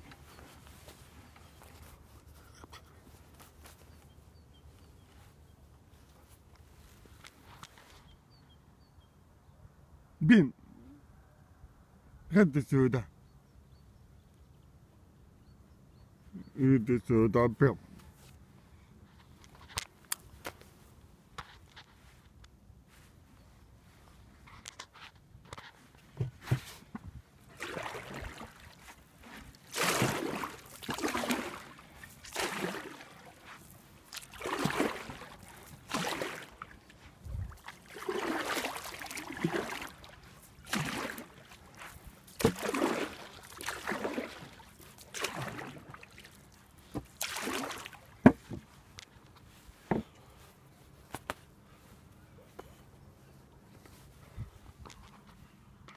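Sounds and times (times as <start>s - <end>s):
water sloshing from paddle strokes: 25.6s - 50.1s.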